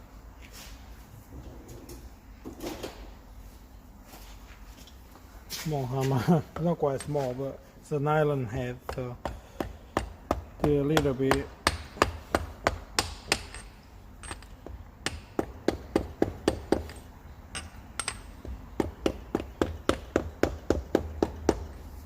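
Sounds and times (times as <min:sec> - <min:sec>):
hammer tapping metal socket: 0:17.6 - 0:18.6.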